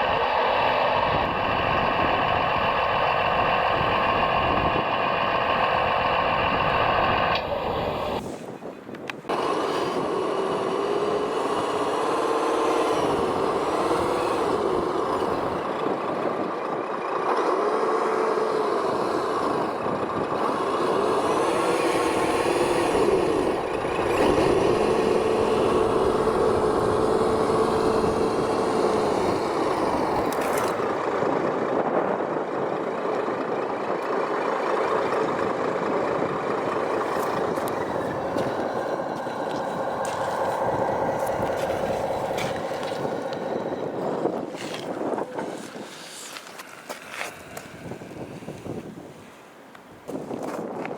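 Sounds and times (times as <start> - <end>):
electric motors whining: 9.3 - 32.2, 33.8 - 49.8.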